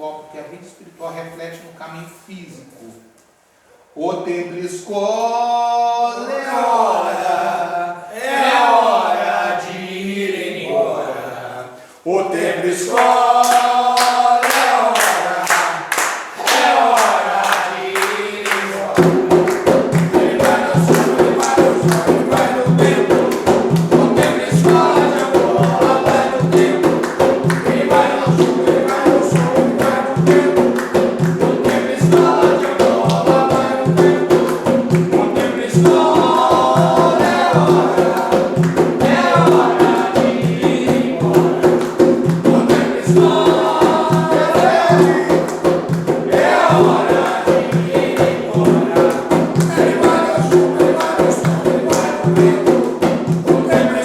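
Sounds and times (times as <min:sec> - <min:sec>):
group of voices singing: 0:05.5 - 0:54.0
drums fast beat: 0:18.6 - 0:54.0.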